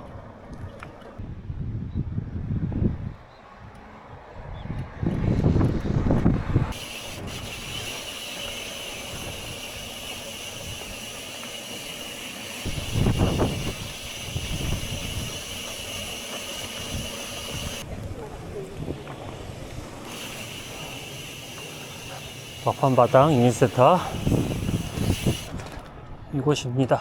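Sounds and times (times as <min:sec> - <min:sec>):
wind buffeting microphone: 0:00.0 - 0:26.8
steady high hiss: 0:19.8 - 0:25.5.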